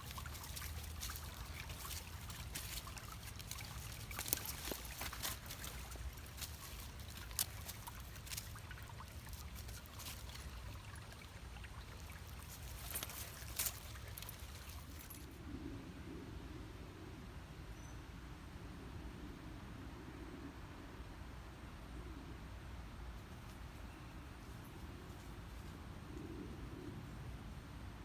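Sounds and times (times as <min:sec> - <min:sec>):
creek water trickling and splashing: 0:00.0 - 0:15.3.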